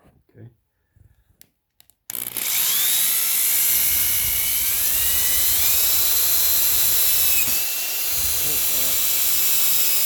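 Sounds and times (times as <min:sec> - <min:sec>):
electric drill drilling through metal: 0:02.1 - 0:10.0.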